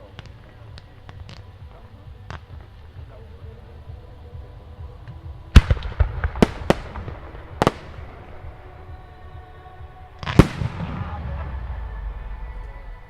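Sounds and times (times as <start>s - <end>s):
firework shells bursting: 5.0s - 8.9s.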